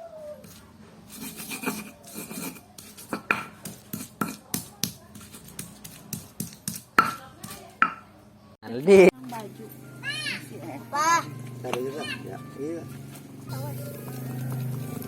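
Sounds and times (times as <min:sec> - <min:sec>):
knife scraping fish: 0:00.4 - 0:06.9.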